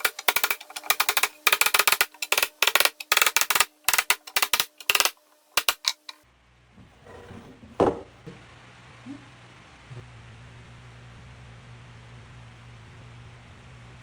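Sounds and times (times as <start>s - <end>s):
rapid clicking and tapping: 0.0s - 6.2s.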